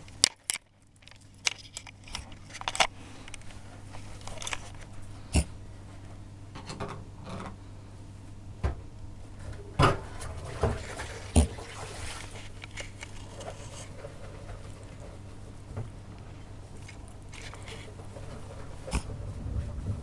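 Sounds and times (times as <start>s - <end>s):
dog snorting: 5.2s - 5.6s, 11.1s - 12.5s, 17.4s - 19.2s.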